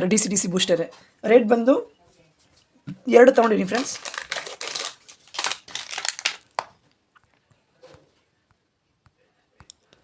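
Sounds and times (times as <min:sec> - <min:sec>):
plastic packaging crinkling: 0:03.2 - 0:06.9.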